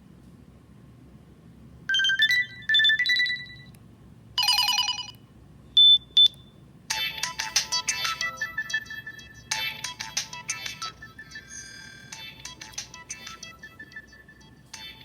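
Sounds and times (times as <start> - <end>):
phone alert tones: 1.9 - 3.7, 4.4 - 5.2, 7.0 - 15.0.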